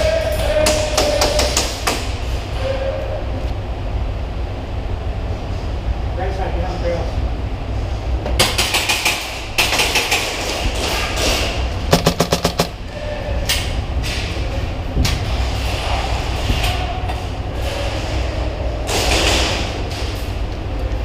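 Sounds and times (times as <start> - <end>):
airsoft gun firing: 11.9 - 12.8.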